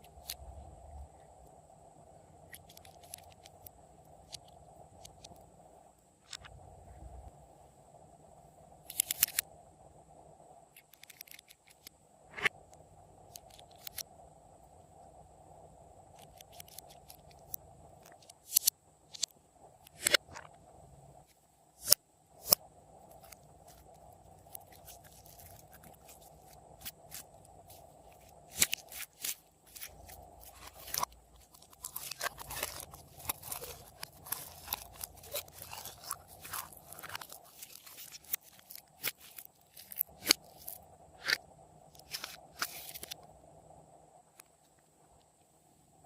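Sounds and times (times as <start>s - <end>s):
crunchy slime crackling: 21.8s - 41.4s.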